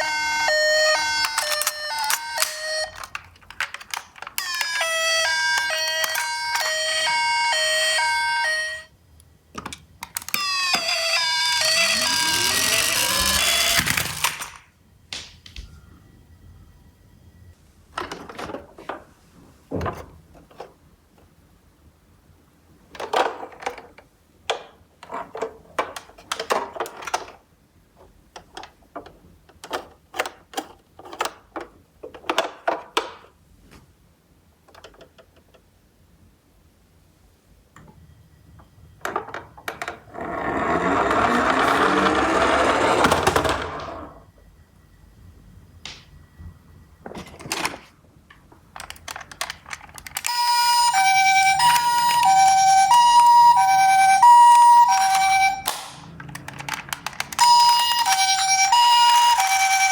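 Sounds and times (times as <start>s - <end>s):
electronic two-tone siren: 0.0s - 3.1s, 4.4s - 8.9s, 10.4s - 14.2s, 50.3s - 55.7s, 57.4s - 59.9s
toy cars clattering: 0.0s - 8.9s, 9.6s - 14.7s, 39.1s - 44.2s, 48.7s - 59.9s
toy car rolling down a slope: 10.2s - 14.6s, 39.7s - 44.2s.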